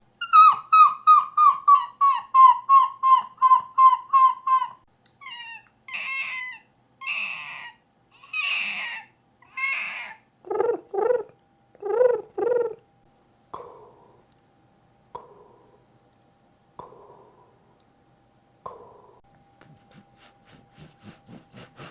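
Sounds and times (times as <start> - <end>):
man imitating pigeon cooing: 10.4 - 12.8
man imitating gull laughing call: 10.5 - 12.8.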